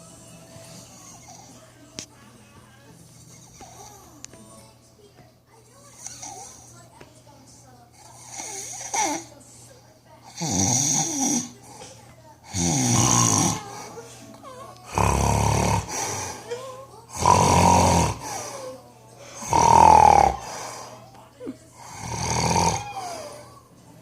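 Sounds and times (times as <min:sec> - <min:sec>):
man snoring loudly: 0:10.3 - 0:11.5, 0:12.5 - 0:13.7, 0:14.9 - 0:16.4, 0:17.1 - 0:18.5, 0:19.4 - 0:20.9, 0:21.8 - 0:23.2.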